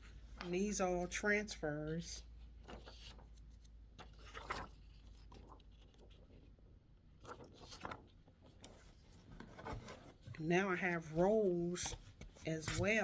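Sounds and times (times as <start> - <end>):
sheets and packaging rustling: 7.2 - 13.0.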